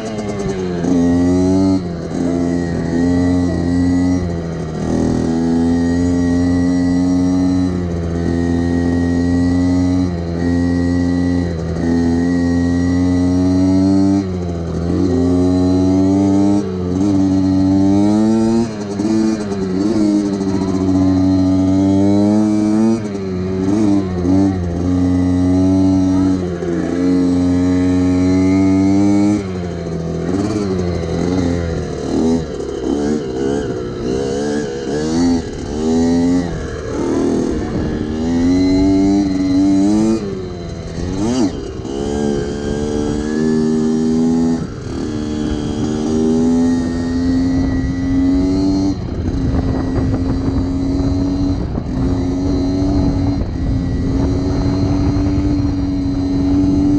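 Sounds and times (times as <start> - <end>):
motorcycle engines revving: 0.0 - 56.9.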